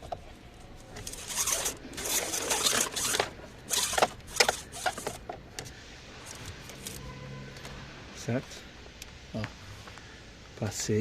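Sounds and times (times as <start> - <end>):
wiring rustling behind plastic trim: 0.9 - 7.0.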